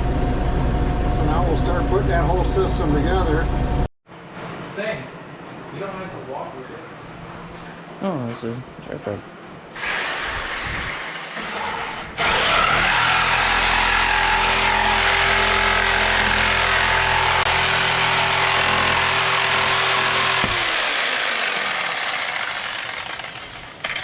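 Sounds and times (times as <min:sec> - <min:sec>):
power tool cutting: 0:09.8 - 0:24.0.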